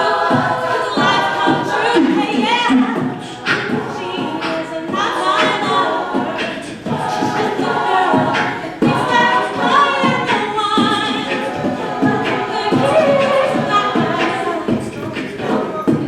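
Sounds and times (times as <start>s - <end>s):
a cappella group singing: 0.0s - 16.0s.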